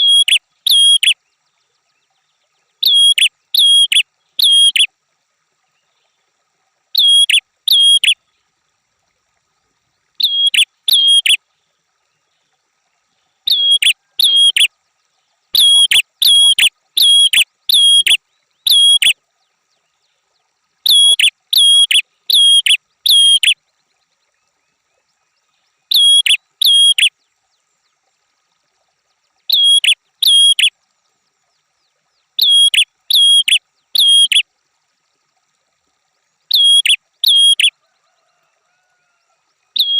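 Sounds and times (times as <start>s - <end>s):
bird chirping sharply: 10.2s - 11.4s.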